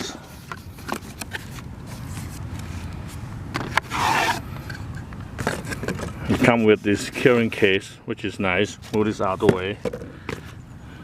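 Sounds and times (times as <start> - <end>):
cardboard scraping rustle: 0.6 - 4.5.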